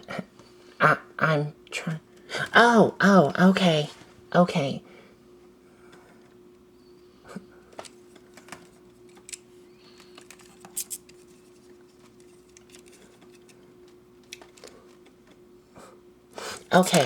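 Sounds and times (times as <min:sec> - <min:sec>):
faint steady hum: 0:00.0 - 0:17.0
plastic parts clicking and tapping: 0:07.7 - 0:11.2, 0:12.0 - 0:15.4.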